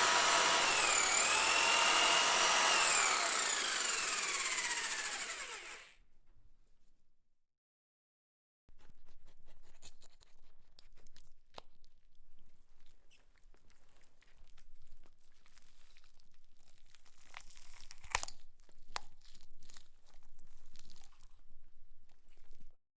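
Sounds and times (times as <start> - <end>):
wet tearing and crunching of flesh: 15.4 - 21.4.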